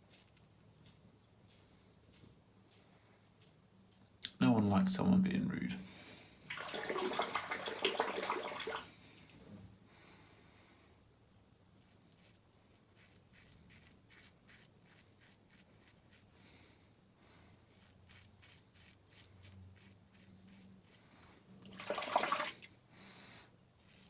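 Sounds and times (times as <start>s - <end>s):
razor scraping stubble: 0.0s - 4.0s, 11.8s - 16.3s, 17.7s - 21.1s, 23.8s - 24.0s
running water splashing: 6.5s - 9.0s, 21.7s - 22.7s.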